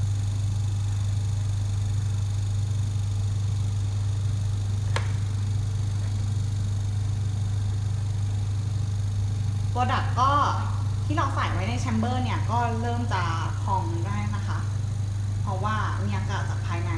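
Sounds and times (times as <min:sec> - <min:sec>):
vacuum pump humming: 0:00.0 - 0:16.9
sharp click: 0:04.9 - 0:05.3.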